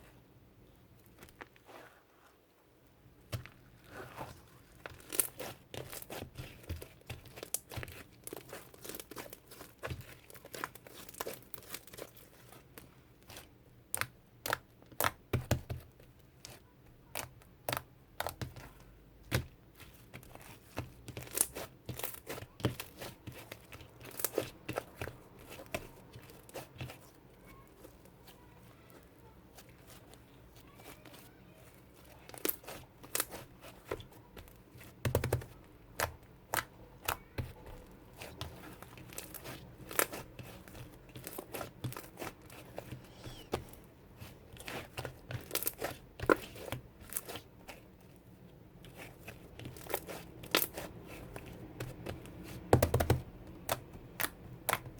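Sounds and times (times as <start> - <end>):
crinkling and tearing: 3.3 - 13.5, 20.0 - 53.1.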